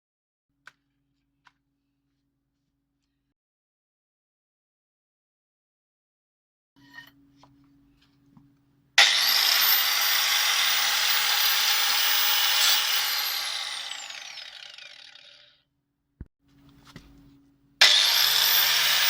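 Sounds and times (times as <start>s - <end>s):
angle grinder whining: 9.0s - 15.5s, 17.8s - 19.0s.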